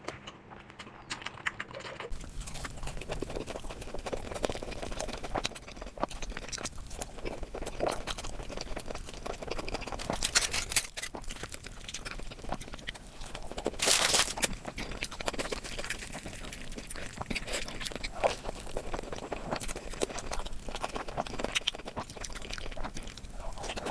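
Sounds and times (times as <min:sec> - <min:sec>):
chewing and crunching: 0:00.0 - 0:23.9.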